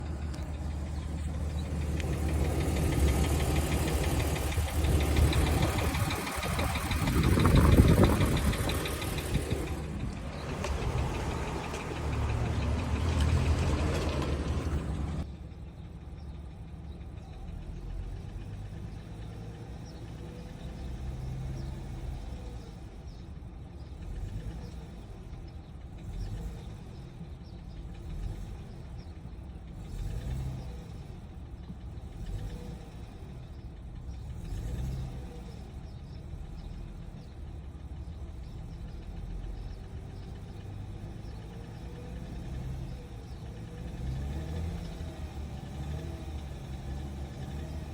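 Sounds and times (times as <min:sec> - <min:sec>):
car engine running with knock: 0:00.0 - 0:15.3.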